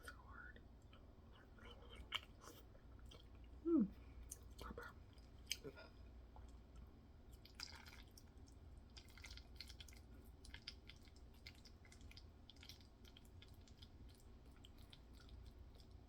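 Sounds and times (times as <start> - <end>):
wet open-mouth chewing: 4.2 - 16.0.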